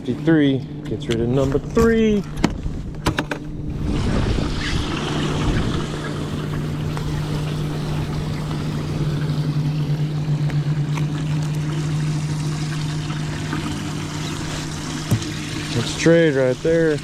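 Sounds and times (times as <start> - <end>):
boat motor humming: 0.0 - 17.0
wind noise: 1.0 - 8.9
water wash: 3.6 - 17.0.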